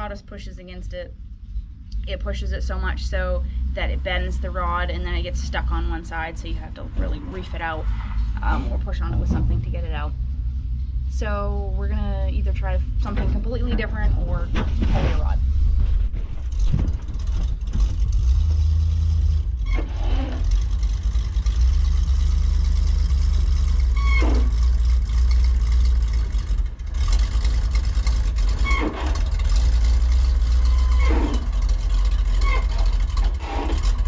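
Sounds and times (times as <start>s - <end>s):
truck engine rumbling: 0.0s - 34.0s
short falling squeaks: 19.6s - 20.6s, 23.9s - 24.7s, 28.5s - 29.3s, 30.6s - 34.0s.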